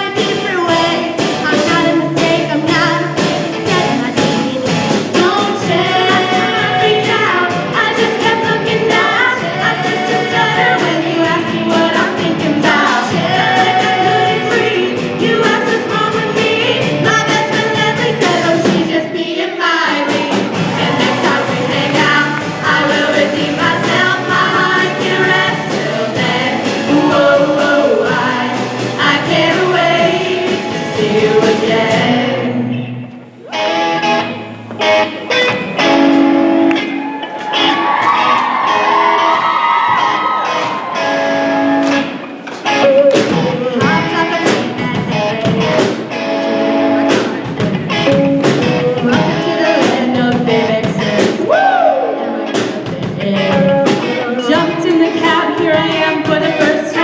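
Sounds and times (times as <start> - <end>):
group of voices singing: 0.0 - 34.3, 48.0 - 57.0.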